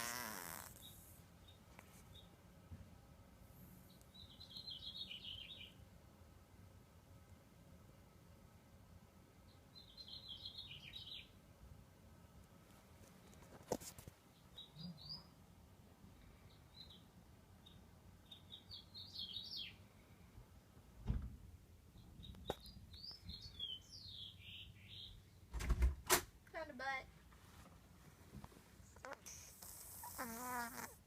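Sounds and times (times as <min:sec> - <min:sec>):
cat snoring with wheeze: 0:00.0 - 0:01.2, 0:29.0 - 0:31.0.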